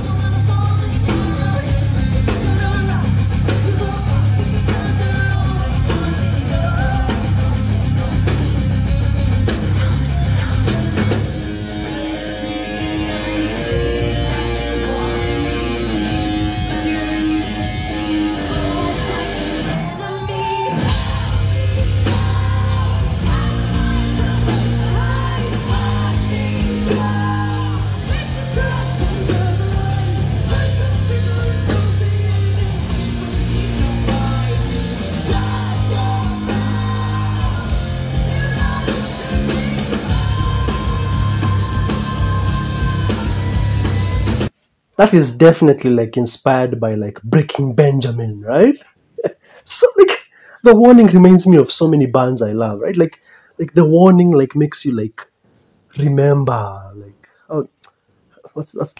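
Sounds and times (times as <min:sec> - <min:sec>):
pounding bass: 0:00.0 - 0:19.9, 0:20.7 - 0:44.5
person singing: 0:00.0 - 0:44.5
distorted electric guitar: 0:00.0 - 0:45.1
drums: 0:00.0 - 0:45.7.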